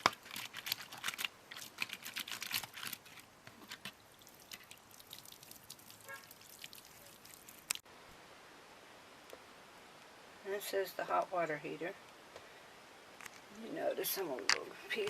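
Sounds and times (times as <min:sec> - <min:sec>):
faint steady hiss: 0:02.9 - 0:15.0
water dripping and splashing: 0:03.7 - 0:07.8.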